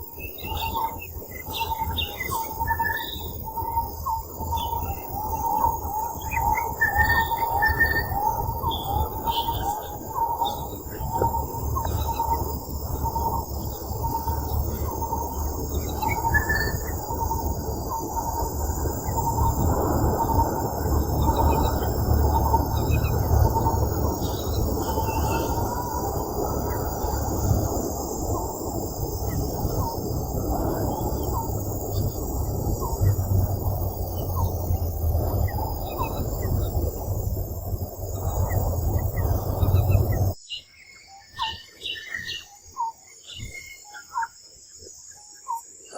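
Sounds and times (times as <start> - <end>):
bird-like chirps: 0.0 - 45.9
high insect drone: 0.0 - 45.9
low rumble: 0.8 - 40.4.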